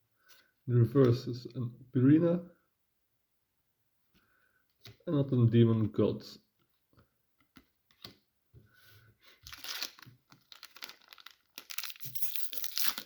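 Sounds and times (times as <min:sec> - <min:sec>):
foil wrapper tearing and crinkling: 0:09.5 - 0:13.0.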